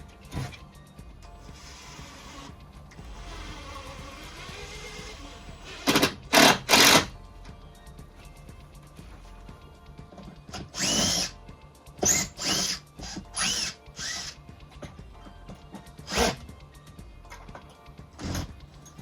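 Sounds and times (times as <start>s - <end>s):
power drill whining: 1.4s - 7.1s, 10.6s - 11.3s, 12.0s - 14.4s, 16.0s - 16.4s, 18.2s - 18.5s.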